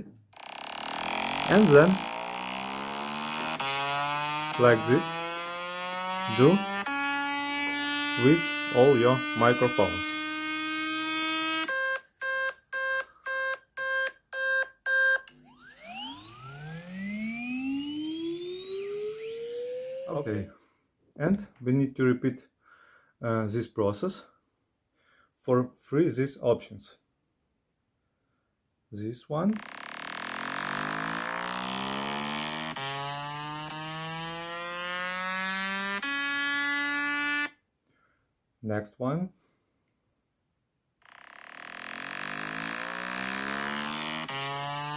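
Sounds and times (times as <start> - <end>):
steady buzzing tone: 0.3 - 14.2, 15.2 - 20.4, 29.6 - 37.5, 41.0 - 44.9
tone rising in pitch: 0.4 - 20.5, 29.6 - 37.5, 41.1 - 44.9.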